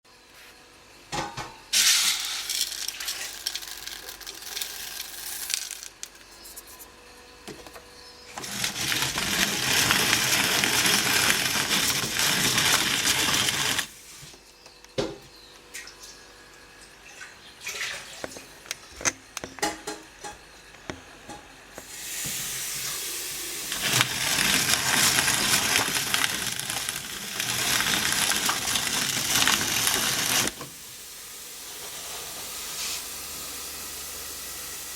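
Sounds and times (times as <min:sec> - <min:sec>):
grain mill grinding: 0:01.8 - 0:06.9, 0:07.5 - 0:14.1, 0:21.8 - 0:30.7.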